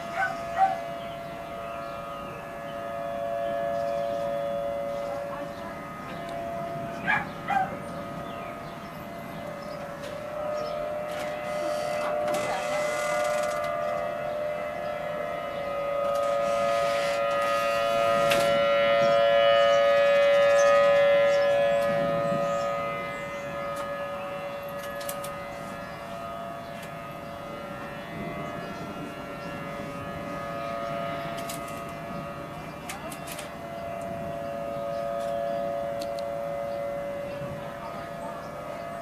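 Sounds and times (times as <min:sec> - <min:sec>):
warning siren steady tone: 0:00.0 - 0:39.0.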